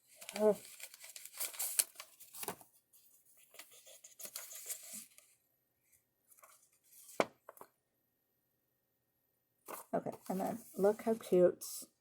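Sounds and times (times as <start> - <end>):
paper packaging rustling: 0.0 - 5.4, 6.3 - 7.7, 9.7 - 11.2.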